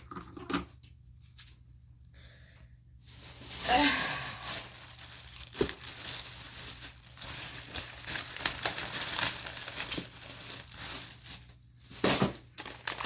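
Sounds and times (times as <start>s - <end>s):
plastic packaging crinkling: 3.1s - 13.0s.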